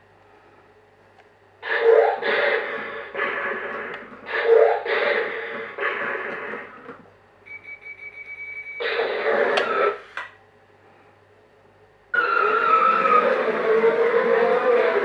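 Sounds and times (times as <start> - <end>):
steady electronic beep: 7.5 - 8.9.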